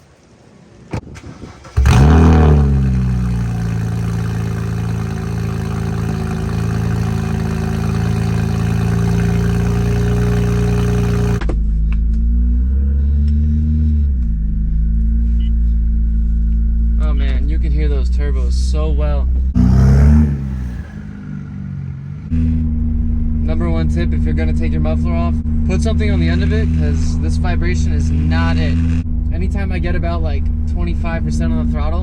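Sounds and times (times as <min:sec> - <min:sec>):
engine starting up: 0:01.0 - 0:06.5
engine revving: 0:01.6 - 0:11.4, 0:19.6 - 0:22.6
loud car engine idling: 0:01.8 - 0:11.4, 0:19.6 - 0:21.6.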